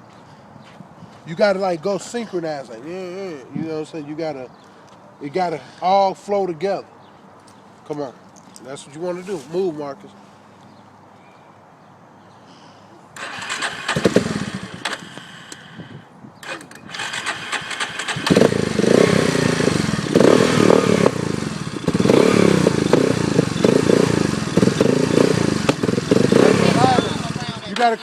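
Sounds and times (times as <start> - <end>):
atv engine cranking and revving: 13.2 - 15.8, 16.4 - 28.0.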